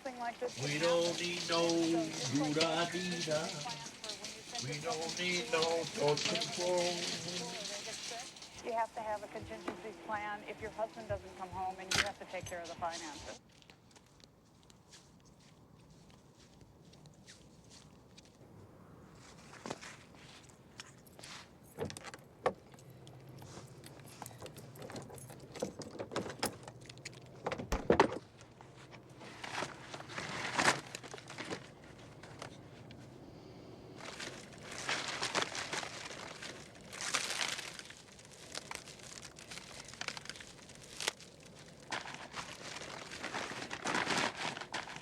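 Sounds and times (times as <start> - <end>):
rustling and crinkling handling: 0.0 - 18.4, 19.1 - 45.0
footsteps: 0.4 - 18.4.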